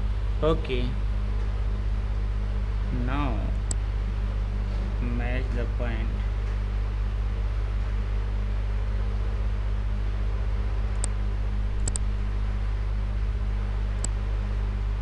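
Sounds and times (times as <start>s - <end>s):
low electrical hum: 0.0s - 15.0s
faint clicks: 11.8s - 12.1s, 14.0s - 14.2s.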